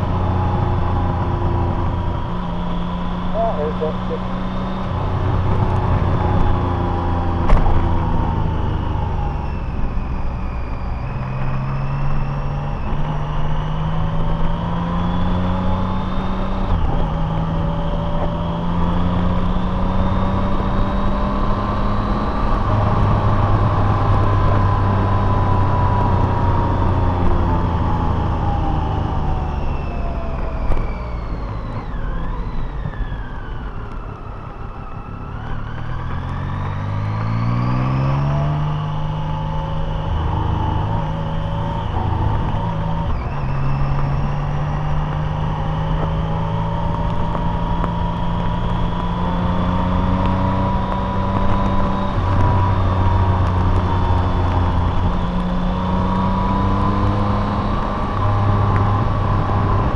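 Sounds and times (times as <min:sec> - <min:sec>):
car engine while driving: 0:00.0 - 0:59.9
road noise: 0:00.0 - 0:59.9.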